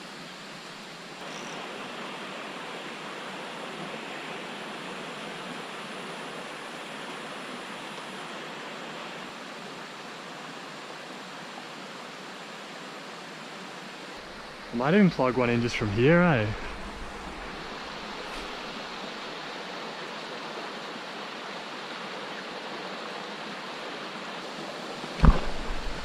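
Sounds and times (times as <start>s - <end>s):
creek water rushing over rapids: 0.0s - 26.0s.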